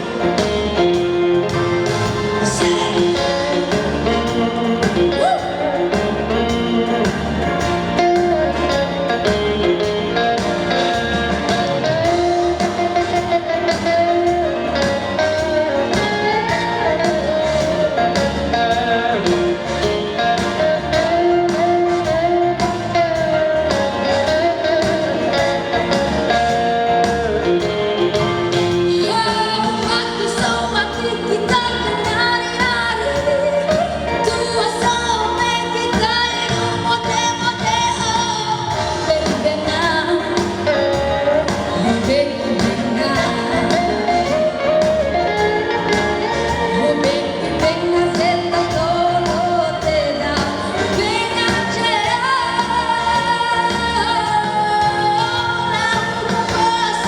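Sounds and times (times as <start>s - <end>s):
instrumental accompaniment with beat: 0.0s - 57.0s
girl singing: 28.9s - 41.0s, 45.9s - 57.0s.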